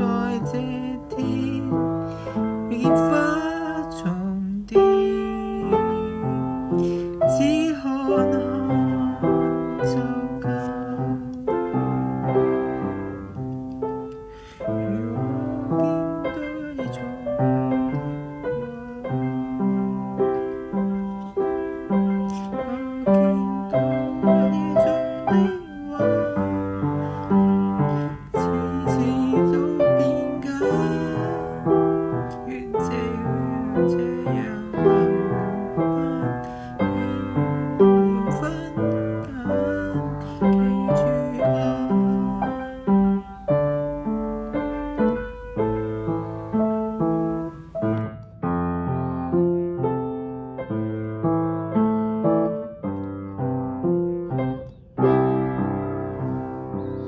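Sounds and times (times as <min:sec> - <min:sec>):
solo piano playing: 0:00.0 - 0:57.0.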